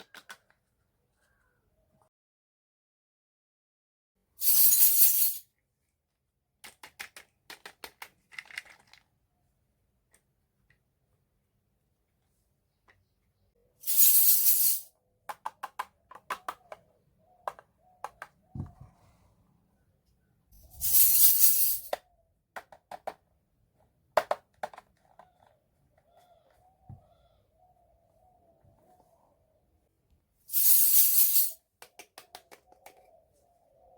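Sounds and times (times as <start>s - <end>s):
light clicks and taps of toys: 0.0s - 0.7s, 6.6s - 9.1s, 15.3s - 16.8s, 24.2s - 26.6s, 31.8s - 33.2s.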